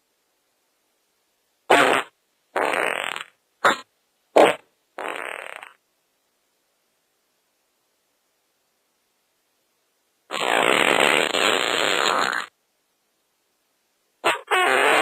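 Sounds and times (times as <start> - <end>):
fart sounds: 1.7 - 5.8, 10.3 - 12.5, 14.2 - 15.0.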